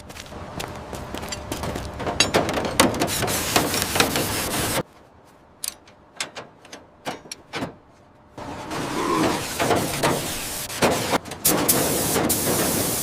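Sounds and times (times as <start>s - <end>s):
sharp clicks and knocks: 1.2s - 4.3s, 5.6s - 7.8s
noisy hiss: 8.7s - 13.0s.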